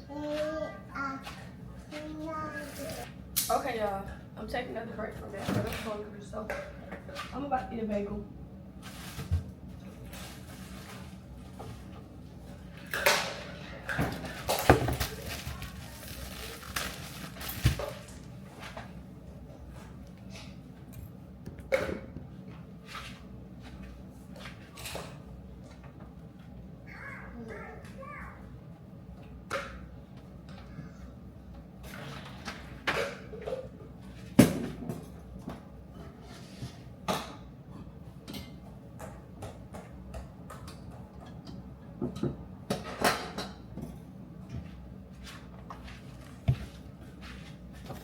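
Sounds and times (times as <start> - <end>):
knocks and rustles: 13.2 - 18.9
household objects knocking and clattering: 14.0 - 15.2.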